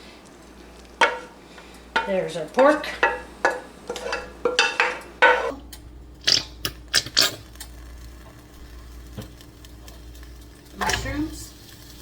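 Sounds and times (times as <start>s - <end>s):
utensil scraping and clinking on pan: 1.0s - 1.3s, 1.9s - 7.7s.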